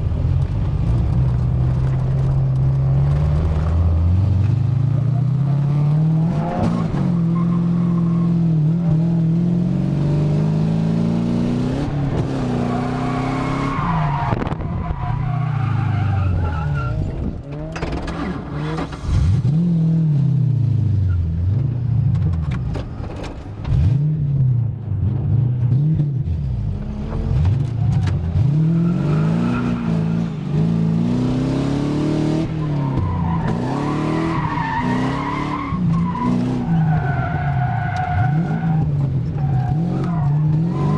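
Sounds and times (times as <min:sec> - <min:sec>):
tyres skidding: 0:11.8 - 0:19.6, 0:25.8 - 0:40.9
car engine revving: 0:23.6 - 0:40.9.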